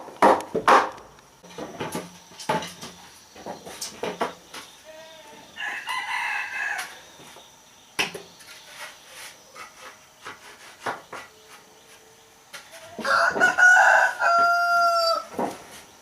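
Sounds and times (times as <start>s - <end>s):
rooster crowing: 5.3s - 7.2s, 12.7s - 15.4s.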